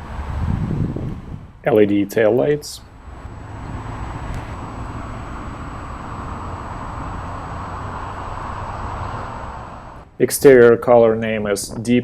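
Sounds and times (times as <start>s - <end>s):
rushing wash: 2.8s - 10.6s
low hum: 2.8s - 10.7s.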